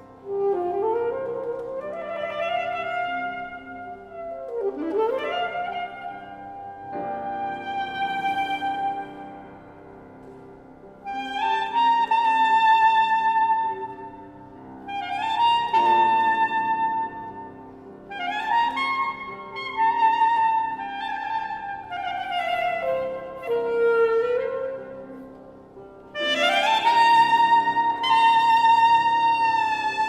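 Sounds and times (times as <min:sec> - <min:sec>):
alto saxophone long notes: 0:00.0 - 0:30.0
piano accompaniment: 0:00.0 - 0:30.0.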